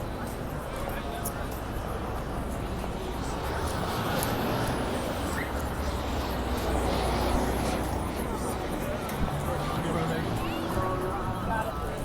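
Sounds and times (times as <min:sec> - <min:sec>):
traffic rumble: 0:00.0 - 0:12.0
voices of passers-by: 0:00.0 - 0:12.0.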